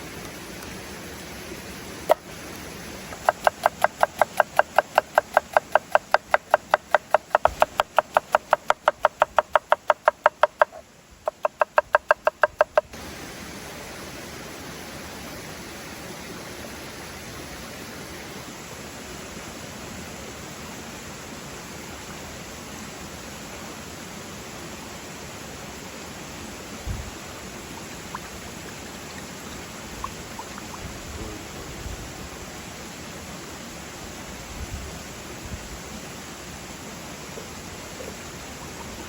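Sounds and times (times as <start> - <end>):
knife chopping on wooden board: 3.2 - 10.8.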